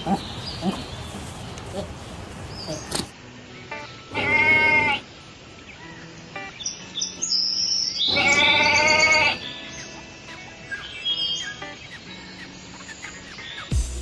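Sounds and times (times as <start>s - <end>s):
animal calling: 0.0s - 3.0s, 4.1s - 5.0s, 8.1s - 9.5s.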